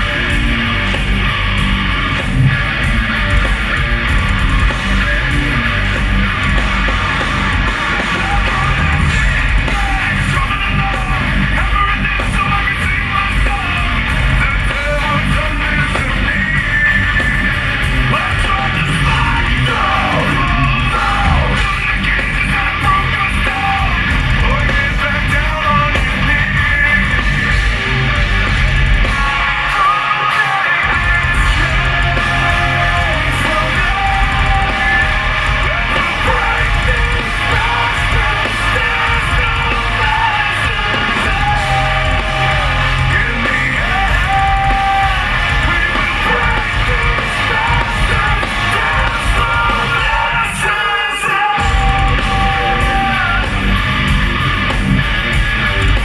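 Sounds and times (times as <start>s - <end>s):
heavy metal band playing live: 0.0s - 56.0s
singer shouting and singing: 0.0s - 56.0s.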